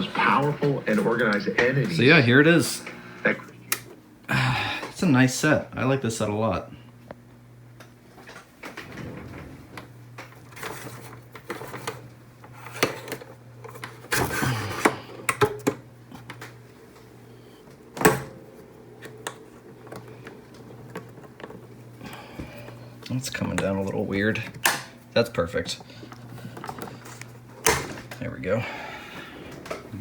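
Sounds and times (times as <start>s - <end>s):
low hum: 8.8s - 11.1s.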